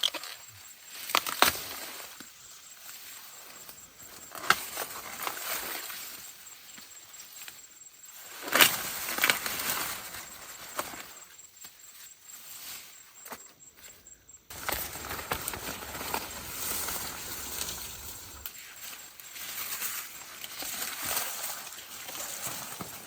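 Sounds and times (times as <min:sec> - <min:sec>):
rustling handling noise: 0:14.5 - 0:23.0.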